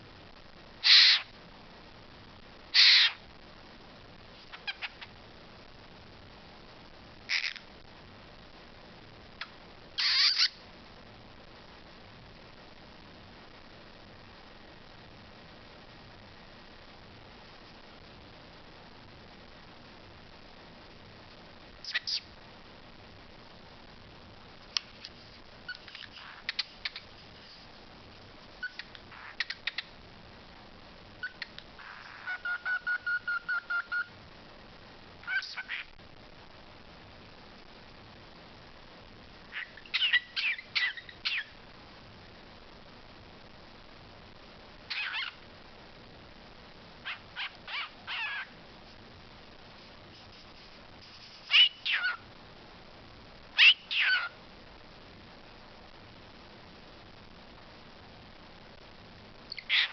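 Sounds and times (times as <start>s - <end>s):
pet bird calling: 0.8s - 1.3s, 2.8s - 3.2s, 4.5s - 5.1s, 7.3s - 7.7s, 10.0s - 10.6s, 31.2s - 34.1s, 35.2s - 35.9s, 39.5s - 41.5s, 44.9s - 45.4s, 47.0s - 48.5s, 51.5s - 52.2s, 53.6s - 54.4s, 59.5s - 59.9s.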